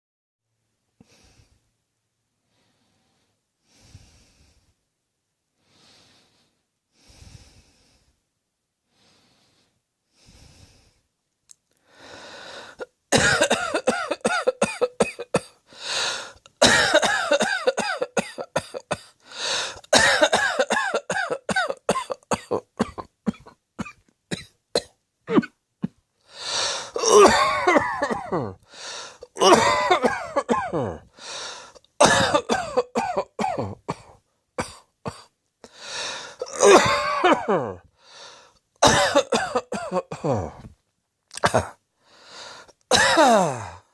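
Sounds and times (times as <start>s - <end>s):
person coughing: 12.8s - 15.6s, 16.6s - 26.0s, 26.6s - 28.6s, 29.2s - 31.1s, 32.0s - 35.3s, 36.3s - 37.9s, 38.8s - 40.7s, 41.4s - 41.8s, 42.9s - 43.9s.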